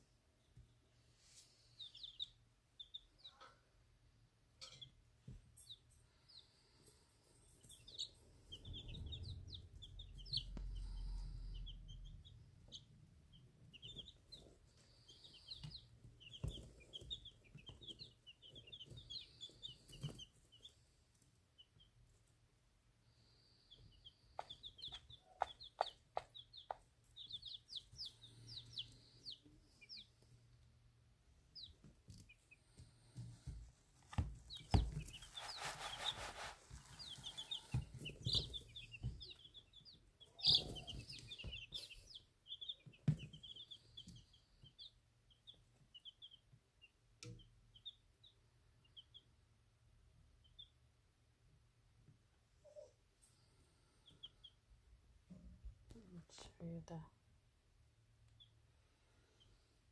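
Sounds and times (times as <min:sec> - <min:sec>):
baby chicks peeping: 0:00.1 - 0:59.9.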